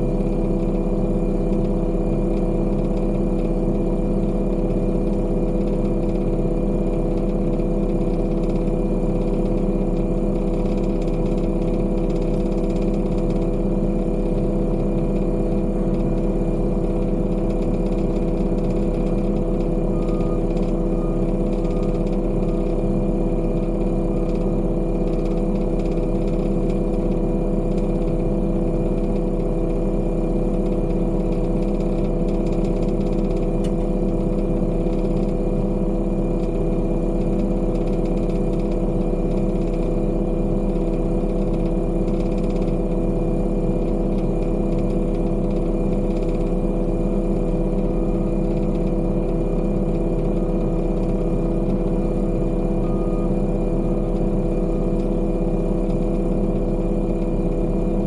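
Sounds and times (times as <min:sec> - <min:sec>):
heavy machine engine running: 0:00.0 - 0:58.0.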